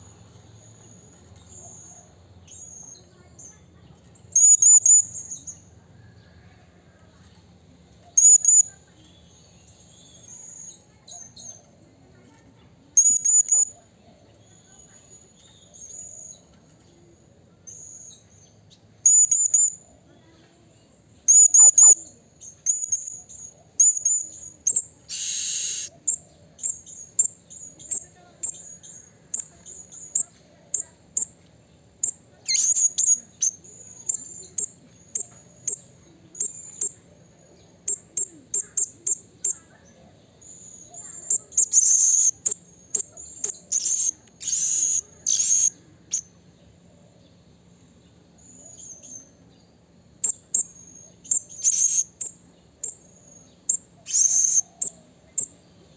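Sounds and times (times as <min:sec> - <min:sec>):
parrot high-pitched chirps: 0:04.3 - 0:05.5, 0:08.2 - 0:08.8, 0:13.0 - 0:13.8, 0:19.0 - 0:19.8, 0:21.3 - 0:28.7, 0:32.0 - 0:35.8, 0:40.4 - 0:46.3, 0:50.2 - 0:53.0, 0:53.7 - 0:55.5.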